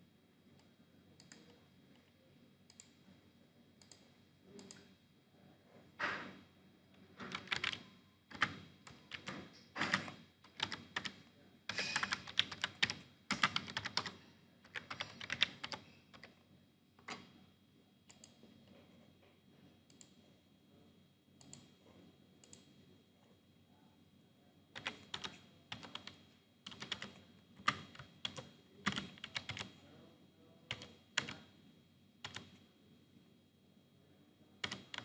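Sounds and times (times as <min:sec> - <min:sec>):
typing on keyboard: 0:07.2 - 0:16.3, 0:24.8 - 0:29.8, 0:30.7 - 0:31.4, 0:32.2 - 0:32.5, 0:34.6 - 0:35.0.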